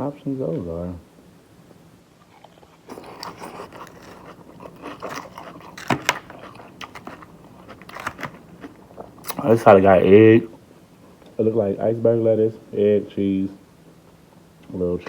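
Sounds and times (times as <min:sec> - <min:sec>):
chewing and crunching food: 0:02.2 - 0:11.4.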